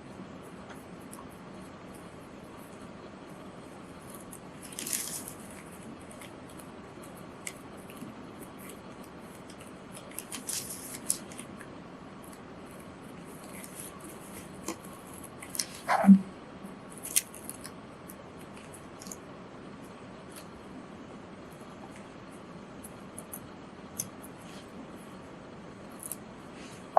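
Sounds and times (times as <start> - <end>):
paper rustling: 4.1 - 6.7, 9.4 - 11.5
scissors snipping paper: 4.1 - 16.0, 16.9 - 19.2, 25.9 - 26.3.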